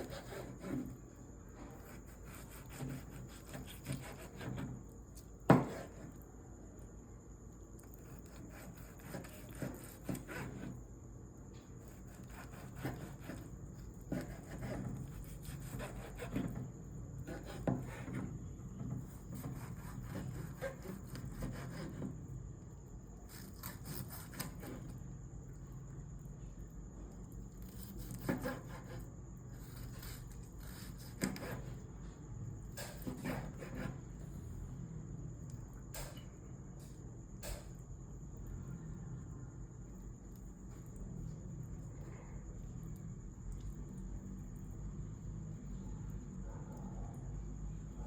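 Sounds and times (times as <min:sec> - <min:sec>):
knife sawing through meat: 0:00.0 - 0:00.9, 0:01.8 - 0:04.6, 0:08.2 - 0:10.7, 0:12.1 - 0:13.5, 0:14.1 - 0:16.6, 0:19.4 - 0:22.0.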